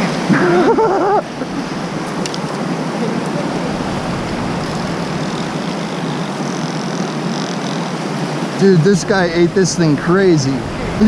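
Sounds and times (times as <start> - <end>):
whitewater rapids rushing: 0.0 - 11.0.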